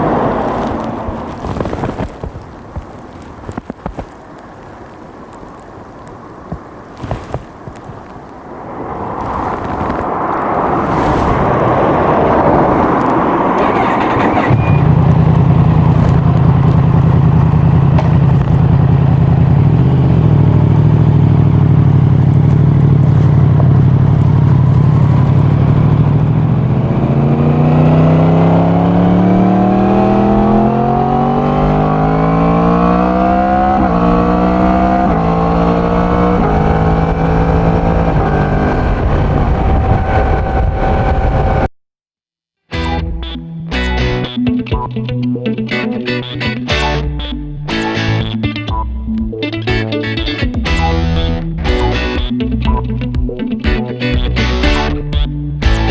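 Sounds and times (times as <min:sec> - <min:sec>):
wind rush: 0:00.0 - 0:19.8, 0:33.5 - 0:41.7
motorcycle engine accelerating: 0:09.2 - 0:41.7, 0:46.6 - 0:55.9.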